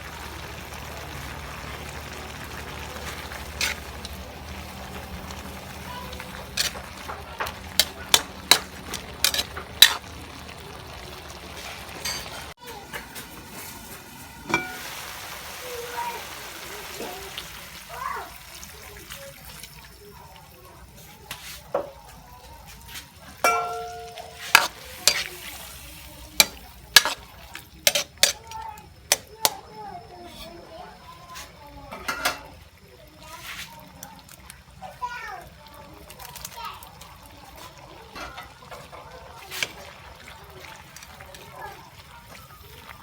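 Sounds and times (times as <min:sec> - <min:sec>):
meat frying in a pan: 0:00.0 - 0:43.0
utensil scraping a pan: 0:02.7 - 0:12.5, 0:23.5 - 0:29.6
utensil knocking and scraping pan: 0:03.6 - 0:04.2, 0:06.3 - 0:10.1, 0:23.5 - 0:25.4, 0:26.4 - 0:27.2, 0:27.9 - 0:28.5.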